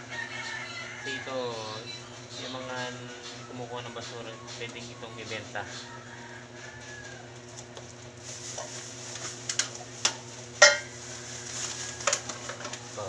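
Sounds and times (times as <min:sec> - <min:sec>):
plastic waste rustling: 0:08.1 - 0:13.0
plastic items clacking together: 0:11.6 - 0:12.9.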